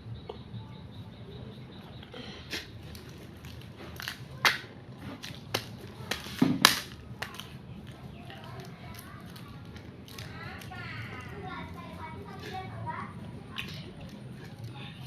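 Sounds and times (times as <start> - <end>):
crunchy eating: 0.0 - 15.0
mouth smacks: 1.8 - 3.1.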